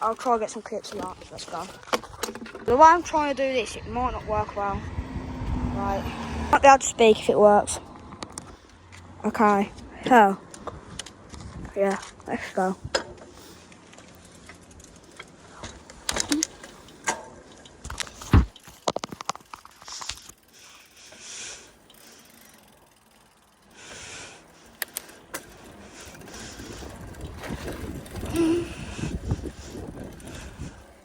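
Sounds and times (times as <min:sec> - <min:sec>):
bicycle clicking and rattling: 0:00.0 - 0:06.0, 0:06.7 - 0:31.0.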